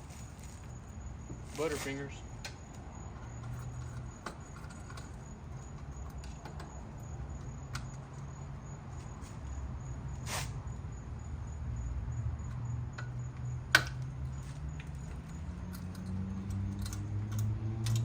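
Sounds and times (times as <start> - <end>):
scraping hiss: 10.2 - 10.6.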